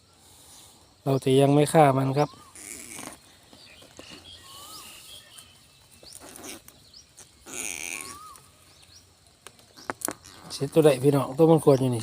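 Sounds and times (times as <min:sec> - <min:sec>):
rat squealing: 0:02.2 - 0:03.2, 0:04.4 - 0:05.4, 0:06.1 - 0:06.8, 0:07.4 - 0:08.7.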